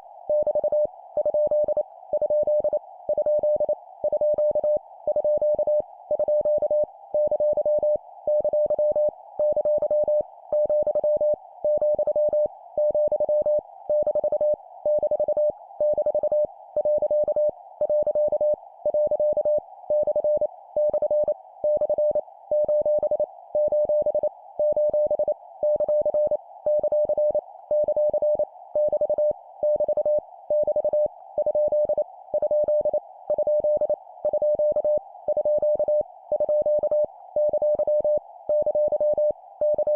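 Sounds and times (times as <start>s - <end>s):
morse code beeps: 0.3s - 39.9s.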